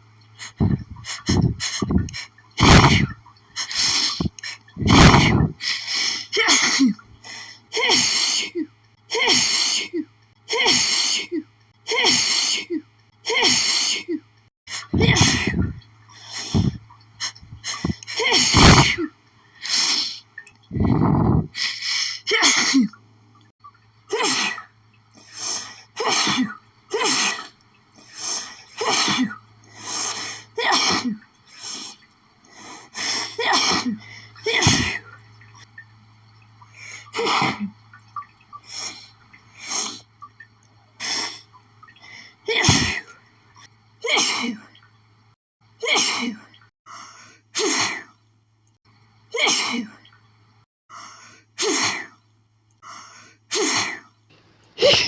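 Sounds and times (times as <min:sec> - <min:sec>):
person sneezing: 0:02.6 - 0:03.1, 0:04.2 - 0:05.5, 0:18.2 - 0:19.1, 0:54.8 - 0:55.0.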